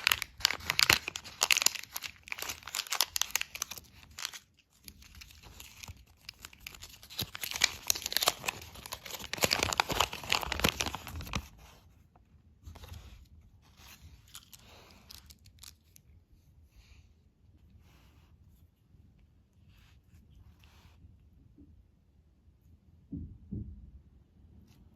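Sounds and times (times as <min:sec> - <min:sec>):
plastic packaging crinkling and tearing: 0:00.0 - 0:11.8, 0:12.7 - 0:16.1.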